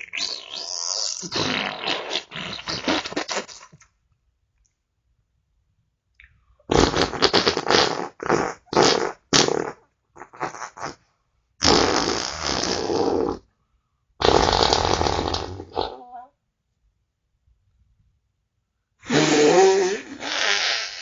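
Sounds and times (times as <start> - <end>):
farts: 0.0 - 3.8, 6.7 - 11.0, 11.6 - 13.5, 14.2 - 16.2, 19.0 - 21.0.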